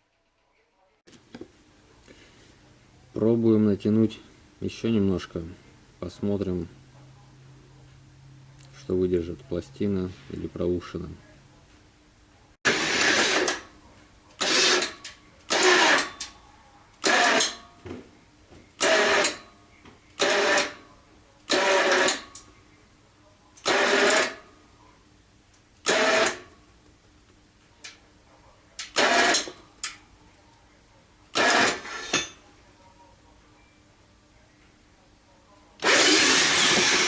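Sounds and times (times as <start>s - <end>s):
winch mechanical bursts: 14.4s - 16.2s, 21.5s - 22.2s, 23.6s - 24.4s, 25.8s - 26.4s, 28.9s - 29.5s, 31.3s - 32.2s, 35.8s - 37.0s.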